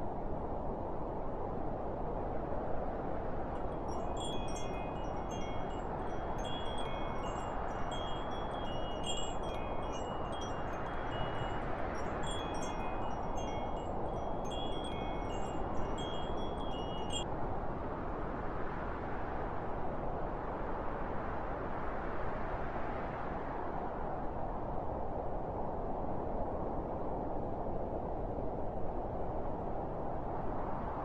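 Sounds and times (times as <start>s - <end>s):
wind chimes tinkling: 3.6s - 17.3s.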